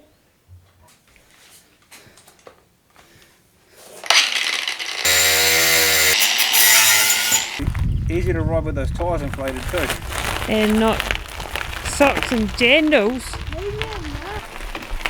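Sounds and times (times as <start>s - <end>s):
power tool motor whine: 4.0s - 7.6s.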